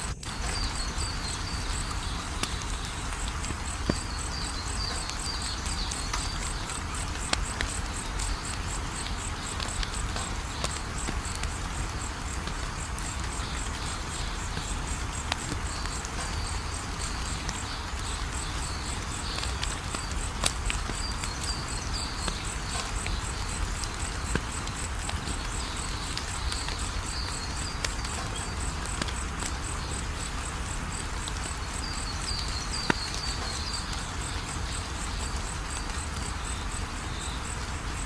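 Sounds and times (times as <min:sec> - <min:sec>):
insects chirping: 0:00.0 - 0:38.0
wood fire crackling: 0:00.0 - 0:38.0.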